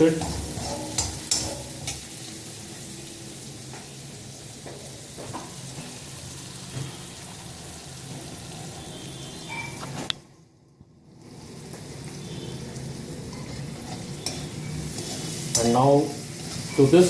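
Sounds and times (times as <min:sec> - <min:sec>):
spoon scraping pan: 0:00.0 - 0:02.2, 0:13.3 - 0:17.0
spices sizzling in hot oil: 0:00.0 - 0:17.0.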